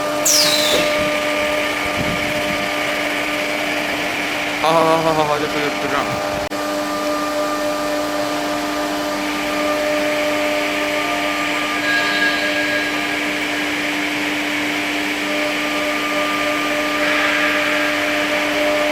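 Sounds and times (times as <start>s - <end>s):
hiss: 0.2s - 1.1s.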